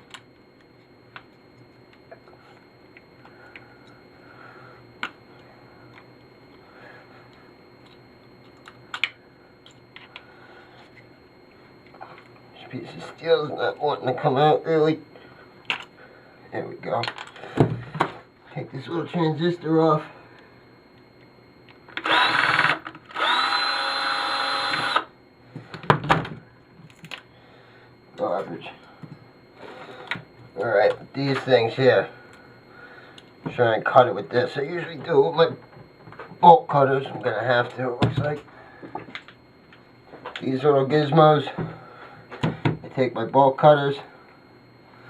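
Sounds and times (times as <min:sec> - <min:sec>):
cordless drill motor whine: 0:19.6 - 0:43.0.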